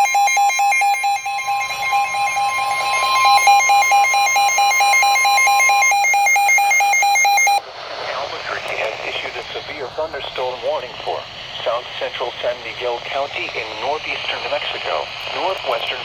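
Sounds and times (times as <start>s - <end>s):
fast-pulsing electronic beep: 0.0s - 7.6s
steady high electronic tone: 0.0s - 7.6s.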